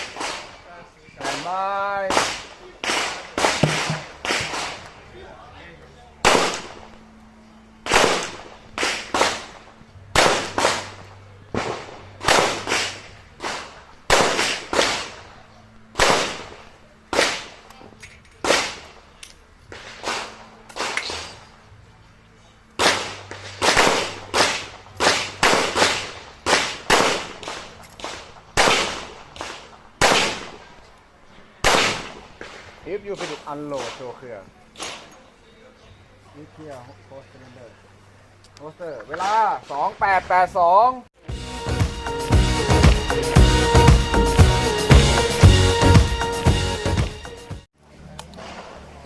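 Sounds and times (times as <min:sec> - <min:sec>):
revolver shots ringing: 0:03.4 - 0:04.8.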